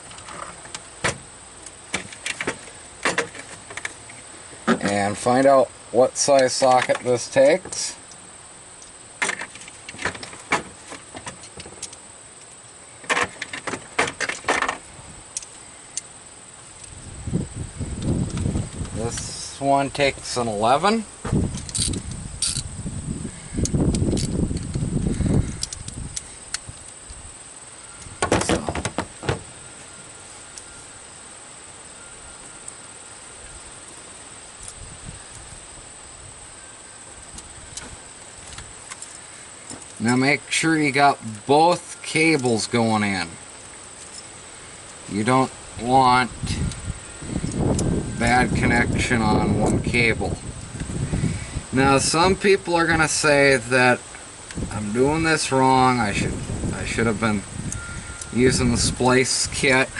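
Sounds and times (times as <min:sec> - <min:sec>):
steady high-pitched whine: 0:00.0 - 0:59.9
metal sockets clinking: 0:21.6 - 0:22.7.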